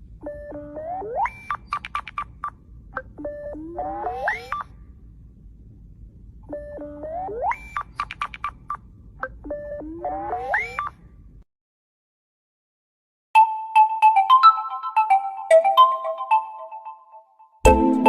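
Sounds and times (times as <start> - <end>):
glitchy electronic ringtone: 0.3 - 1.6.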